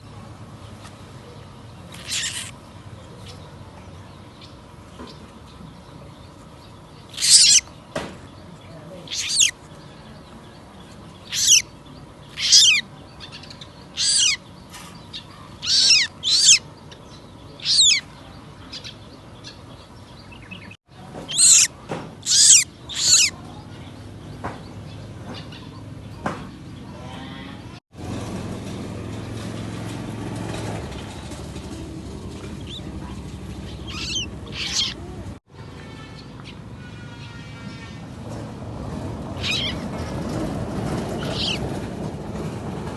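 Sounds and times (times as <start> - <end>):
young birds screeching: 1.9 - 2.6, 7.0 - 7.9, 9.0 - 10.3, 11.2 - 23.6, 32.4 - 35.4, 39.3 - 40.3, 41.0 - 41.8.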